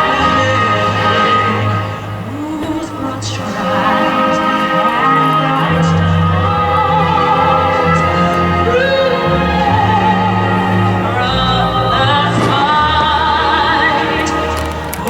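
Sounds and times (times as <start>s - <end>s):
person singing long wavering notes: 0.0s - 15.0s
sustained low notes: 0.0s - 15.0s.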